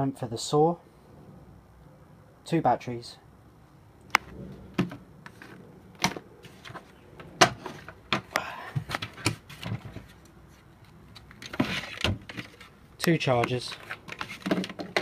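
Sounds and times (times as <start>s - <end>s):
hard items clicking and knocking: 4.1s - 10.2s, 13.4s - 15.0s.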